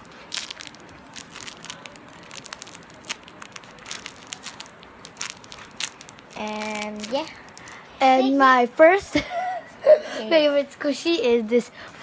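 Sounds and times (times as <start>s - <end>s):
foam toy squeezed crinkling: 0.0s - 7.9s.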